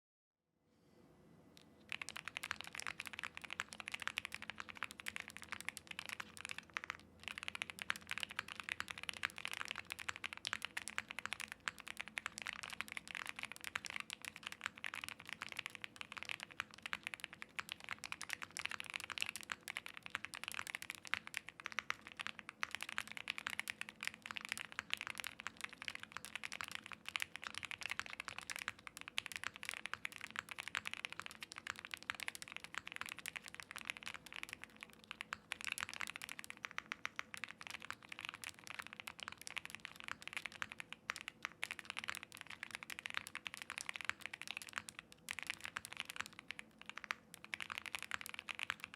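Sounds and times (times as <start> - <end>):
fast mechanical keyboard typing: 1.9 - 48.9.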